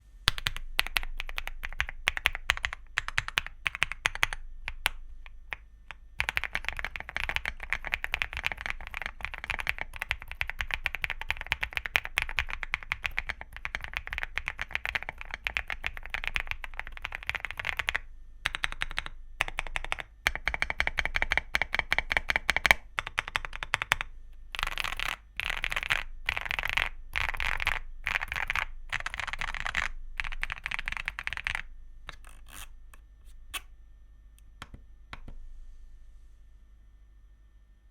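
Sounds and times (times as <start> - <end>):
mechanical keyboard typing: 0.3 - 32.7.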